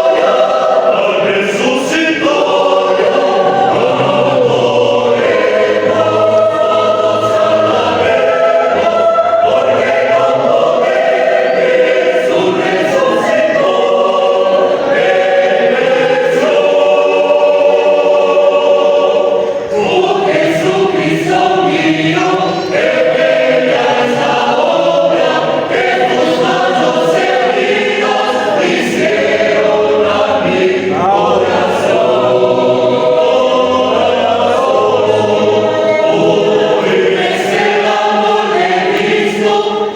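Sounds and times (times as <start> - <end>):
choir singing: 0.0 - 39.9.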